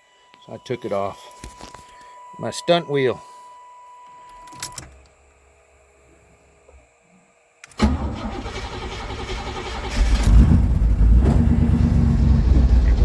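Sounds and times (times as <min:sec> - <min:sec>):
car engine starting and revving: 0:07.8 - 0:13.0.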